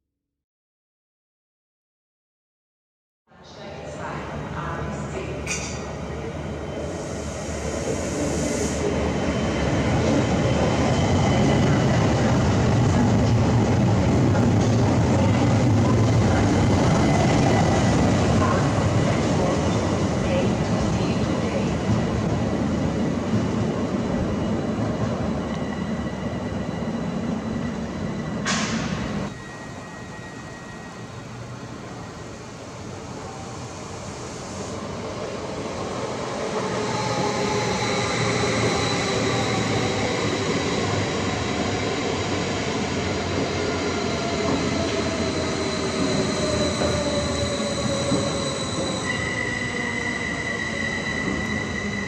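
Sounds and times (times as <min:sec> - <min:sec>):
train wheel and brake squeal: 0:24.2 - 0:32.5, 0:36.5 - 0:41.8, 0:43.6 - 0:52.0.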